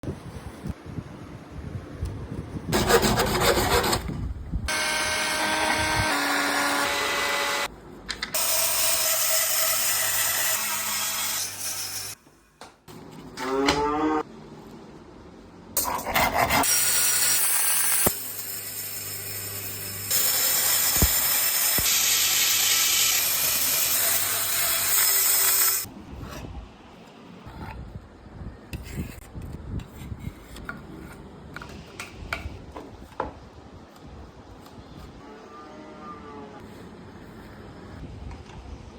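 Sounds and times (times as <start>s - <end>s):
hand rubbing and scraping wood: 2.8s - 4.2s.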